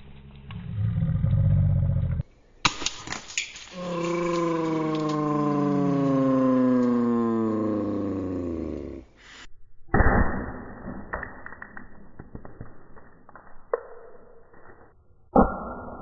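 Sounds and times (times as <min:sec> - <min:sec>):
pellets clicking on impact: 0:02.6 - 0:05.2.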